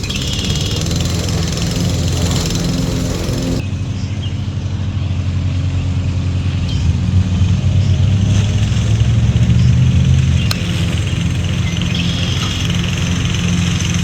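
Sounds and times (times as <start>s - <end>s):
lawnmower engine running: 0.0s - 14.0s.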